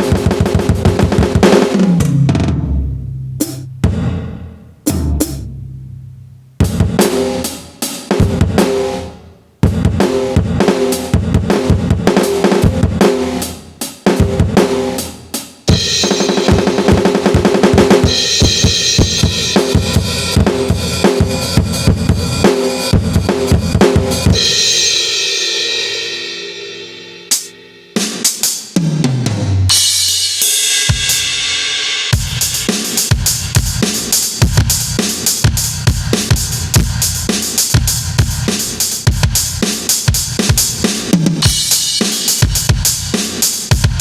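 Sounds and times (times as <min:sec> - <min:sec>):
electronic drum beat: 0:00.0 - 0:08.8, 0:15.7 - 0:25.0, 0:32.1 - 0:44.0
crash cymbal ringing: 0:24.4 - 0:28.0.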